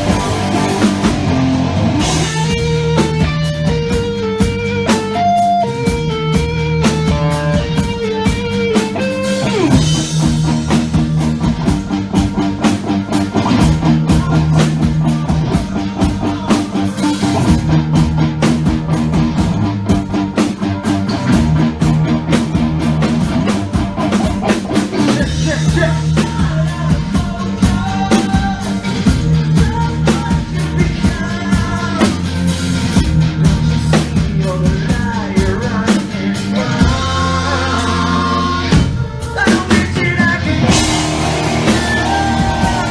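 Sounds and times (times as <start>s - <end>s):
drum kit: 0.0s - 42.9s
electric guitars: 0.0s - 42.9s
person singing: 13.6s - 17.4s, 24.5s - 32.4s, 33.9s - 42.9s.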